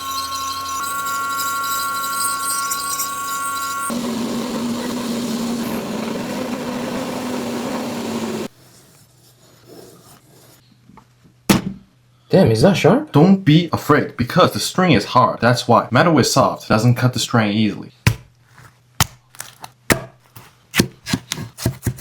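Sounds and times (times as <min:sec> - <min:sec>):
powered sharpener whining: 0:00.0 - 0:08.5
steel grinding on sharpener: 0:00.0 - 0:08.5.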